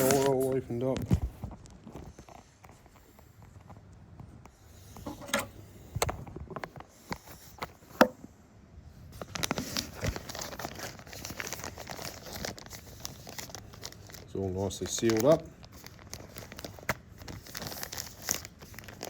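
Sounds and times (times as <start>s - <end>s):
wrapping crinkling: 0.0s - 3.0s, 9.2s - 19.0s.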